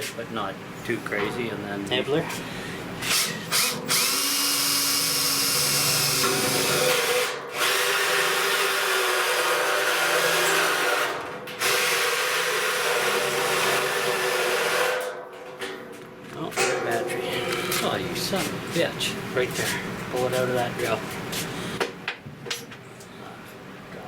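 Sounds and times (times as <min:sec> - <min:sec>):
cordless drill boring sheet metal: 0:03.0 - 0:15.1.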